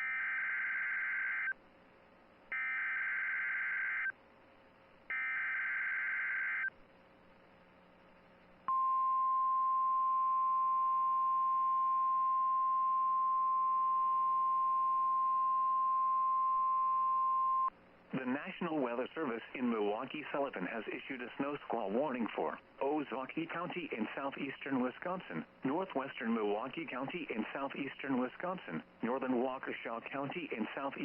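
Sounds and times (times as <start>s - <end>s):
steady warning alarm tone: 0.0s - 1.5s, 2.5s - 4.1s, 5.1s - 6.7s.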